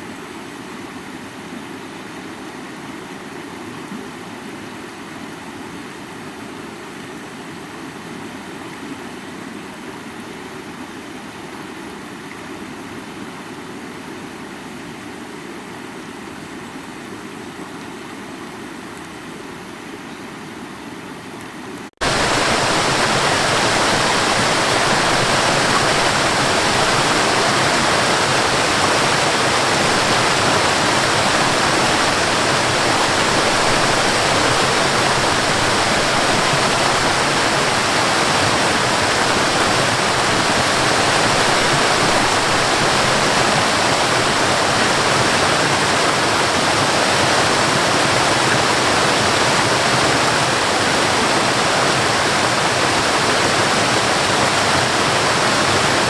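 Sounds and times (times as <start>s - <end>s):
waterfall rushing: 22.0s - 56.0s.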